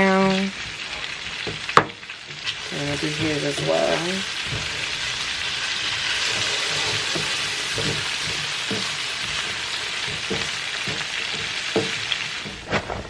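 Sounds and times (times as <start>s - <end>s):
potatoes sizzling in oil: 0.0s - 13.0s
utensil knocking against pan: 6.7s - 12.6s.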